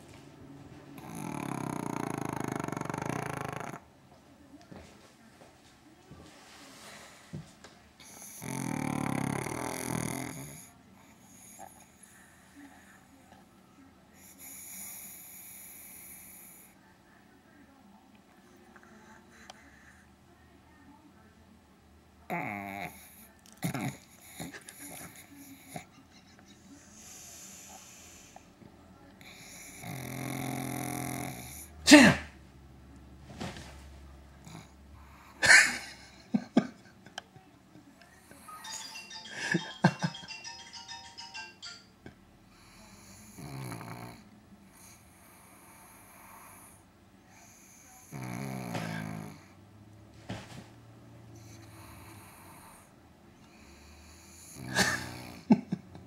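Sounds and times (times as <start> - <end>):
dog snoring: 1.0 - 3.9, 8.0 - 12.1, 14.2 - 16.7, 22.3 - 25.8, 29.2 - 31.7, 42.7 - 49.6, 51.4 - 52.9, 53.5 - 55.5
dog snorting: 1.0 - 3.9.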